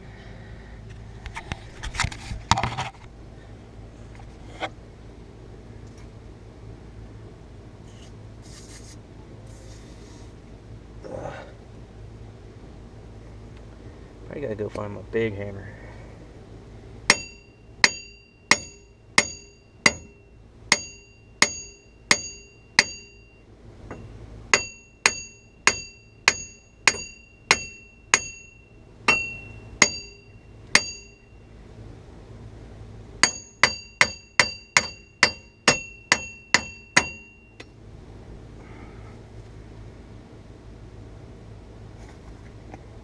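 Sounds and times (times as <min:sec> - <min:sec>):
hammer striking metal hub: 0:17.1 - 0:31.3, 0:33.2 - 0:37.7.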